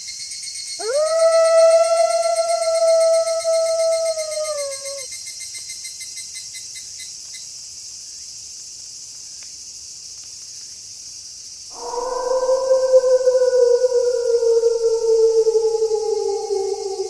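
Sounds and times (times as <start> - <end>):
crickets trilling: 0.3 - 7.4, 10.6 - 17.0
wolf howl: 0.8 - 5.1, 11.7 - 17.0
pulsing insect chirp: 0.8 - 5.4, 11.7 - 17.0.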